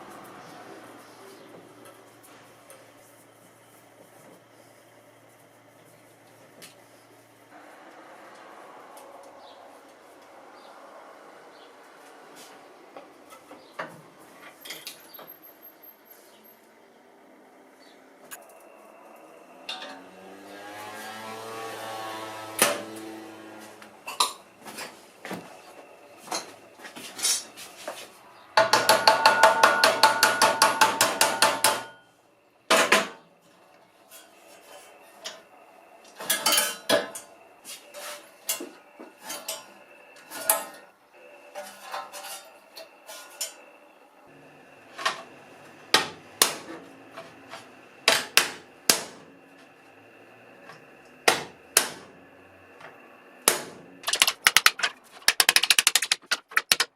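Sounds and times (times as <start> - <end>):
fast rattling: 54.0 - 56.9.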